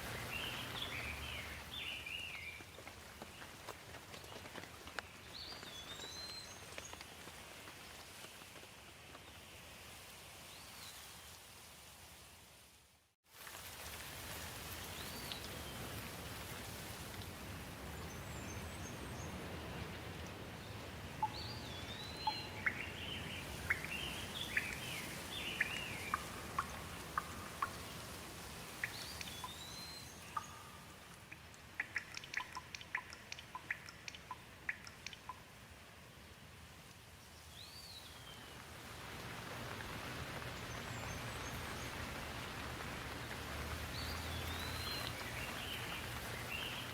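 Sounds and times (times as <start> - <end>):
steady rain hiss: 0.0 - 46.9
birds calling: 21.2 - 28.1, 31.8 - 35.4.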